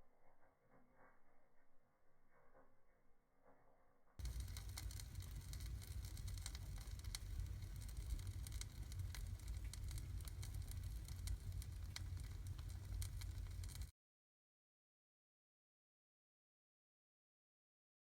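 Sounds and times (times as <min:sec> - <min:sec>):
low rumble of fire: 0:04.2 - 0:13.9
wood fire crackling and popping: 0:04.2 - 0:13.9.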